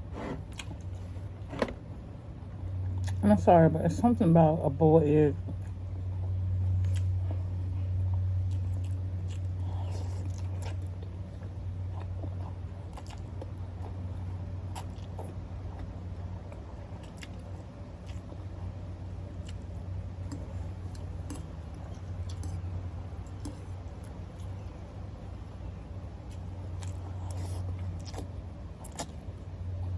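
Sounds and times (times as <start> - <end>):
steady low hum: 0.0 - 29.9
person chewing noodles: 5.5 - 25.6, 26.2 - 29.4.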